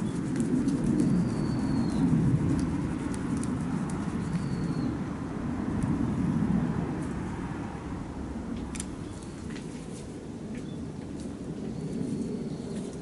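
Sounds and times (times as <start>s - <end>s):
faint bird chirps: 4.2s - 5.0s.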